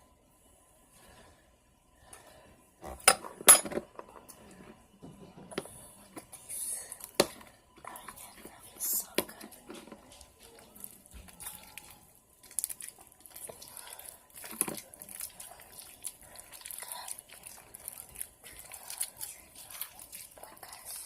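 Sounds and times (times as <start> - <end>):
slime squelching by hand: 7.9 - 21.0.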